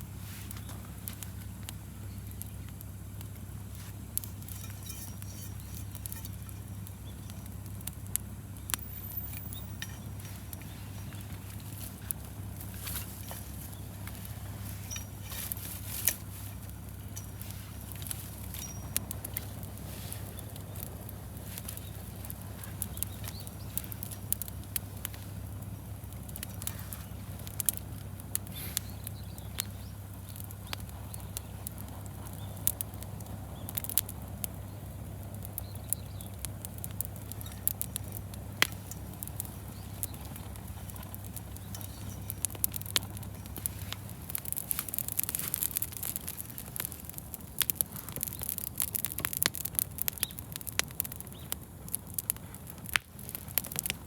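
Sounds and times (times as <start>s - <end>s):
campfire crackling: 0.0s - 54.0s
low hum: 0.6s - 31.7s.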